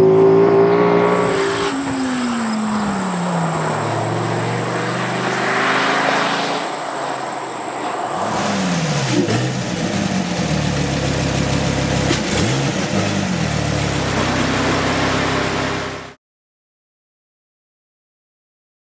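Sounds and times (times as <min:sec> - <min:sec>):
car engine revving: 0:00.0 - 0:16.2.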